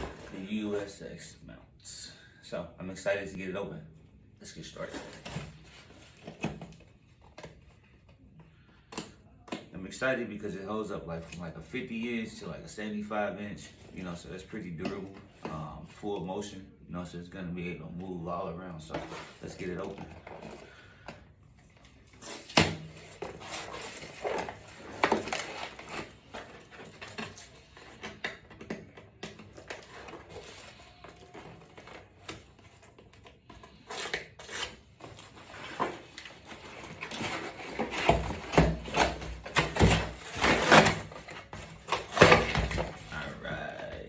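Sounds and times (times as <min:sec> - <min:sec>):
cardboard packaging scraping: 0:00.0 - 0:00.9, 0:21.8 - 0:43.6.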